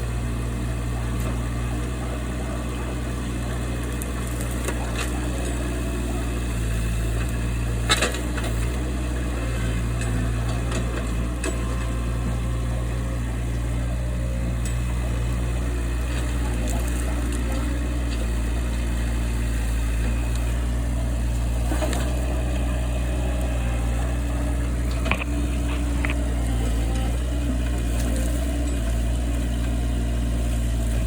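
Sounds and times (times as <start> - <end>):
large engine running steadily: 0.0 - 31.0.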